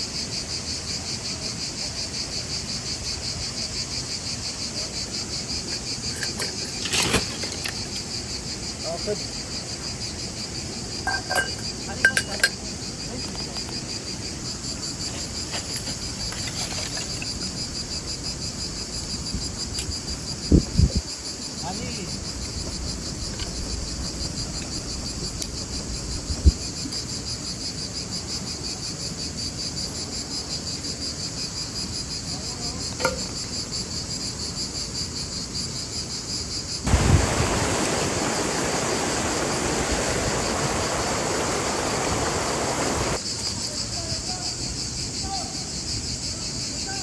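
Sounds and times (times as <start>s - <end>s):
crickets chirping: 0.0s - 47.0s
rushing noise: 36.9s - 43.2s.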